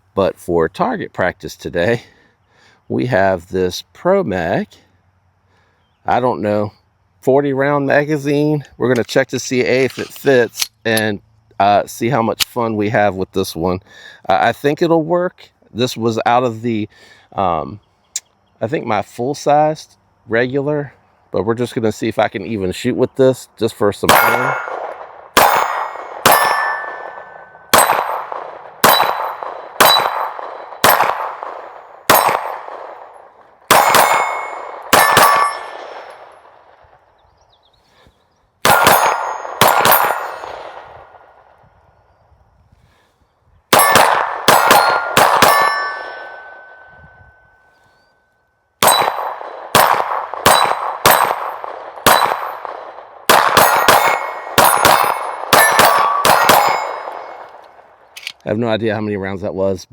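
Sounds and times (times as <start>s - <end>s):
bullet hitting steel target: 24.1s - 36.6s, 38.6s - 41.2s, 43.7s - 46.9s, 48.8s - 58.3s
pistol shots: 24.1s - 36.9s, 38.6s - 41.5s, 43.7s - 46.9s, 48.8s - 58.4s.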